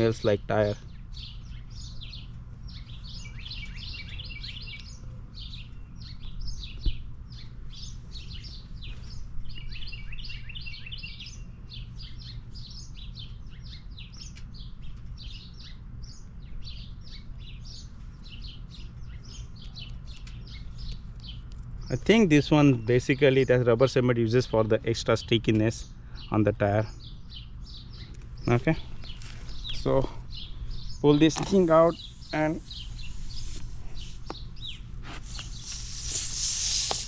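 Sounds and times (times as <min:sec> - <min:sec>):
birds chirping: 0:00.0 - 0:37.0
steady low rumble: 0:26.8 - 0:36.7.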